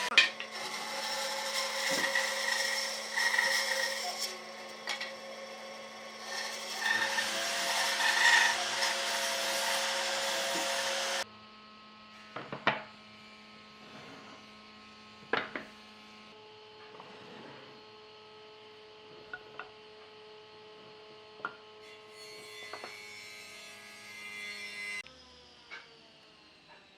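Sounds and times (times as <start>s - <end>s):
power tool cutting wood: 0.0s - 11.2s, 21.8s - 26.9s.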